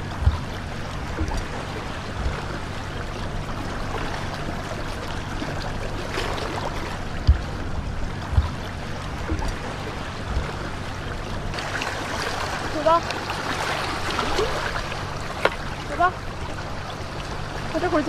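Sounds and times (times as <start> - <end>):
dull low thumps: 0.0 - 3.6, 6.0 - 11.6
seawater washing at shoreline: 0.0 - 18.0.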